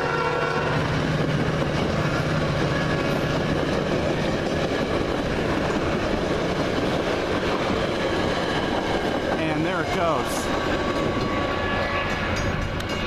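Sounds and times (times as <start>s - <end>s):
train wheels clattering over rail joints: 0.9s - 13.0s.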